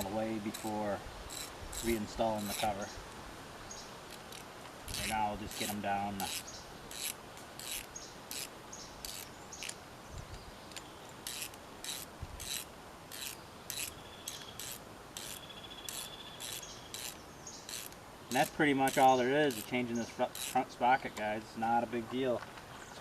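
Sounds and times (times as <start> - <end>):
ratchet wrench rasping: 0.0 - 2.8, 4.1 - 9.8, 11.2 - 20.6.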